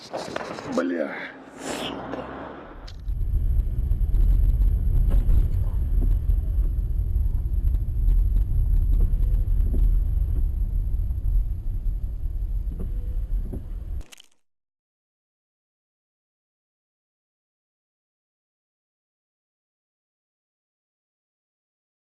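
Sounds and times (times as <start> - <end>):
moving car rumble: 1.9 - 14.0.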